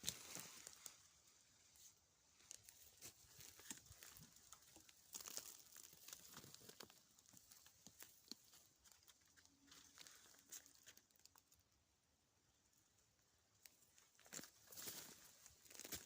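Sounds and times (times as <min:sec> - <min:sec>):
rustling undergrowth: 0:00.0 - 0:11.5, 0:13.6 - 0:16.0
twigs snapping: 0:02.5 - 0:11.5, 0:14.2 - 0:16.0.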